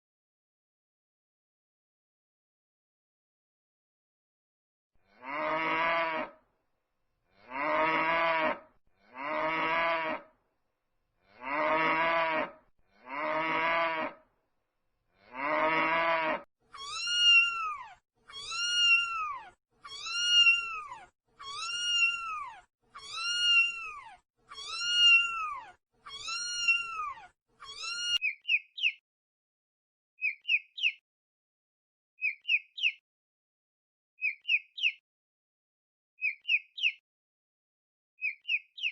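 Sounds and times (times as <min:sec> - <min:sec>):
cow mooing: 0:05.1 - 0:06.4, 0:07.4 - 0:10.3, 0:11.3 - 0:14.2, 0:15.2 - 0:16.5
cat meowing: 0:16.8 - 0:28.2
bird chirps: 0:27.7 - 0:29.0, 0:30.2 - 0:31.0, 0:32.2 - 0:33.0, 0:34.2 - 0:35.0, 0:36.2 - 0:37.0, 0:38.2 - 0:38.9.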